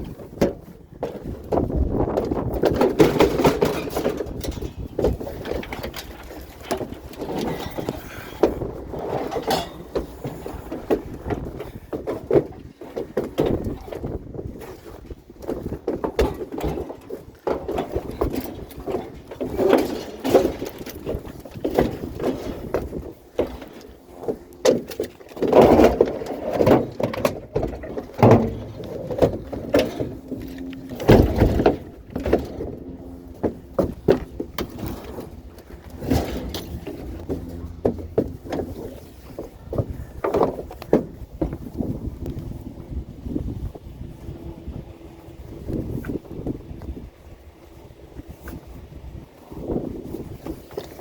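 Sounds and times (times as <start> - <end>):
scrap metal clanking and rattling: 0.0 - 51.0
low steady hum: 23.2 - 51.0.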